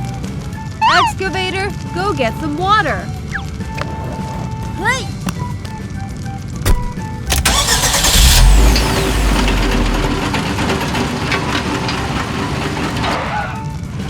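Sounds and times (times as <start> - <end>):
excavator engine rumbling: 3.3 - 6.1, 7.2 - 14.0
engine starter click: 7.3 - 13.4.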